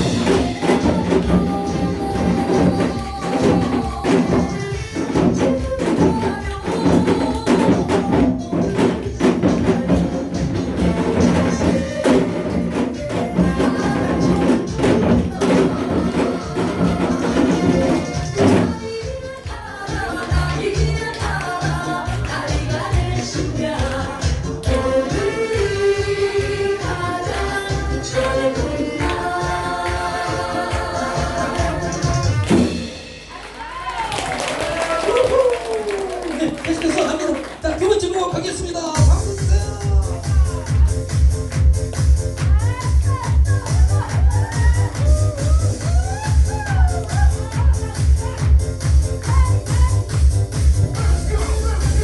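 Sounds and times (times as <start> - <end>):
recorded backing song: 0.0 - 35.4, 36.4 - 52.0
hourglass drums struck in rhythm: 19.8 - 33.9, 38.8 - 52.0.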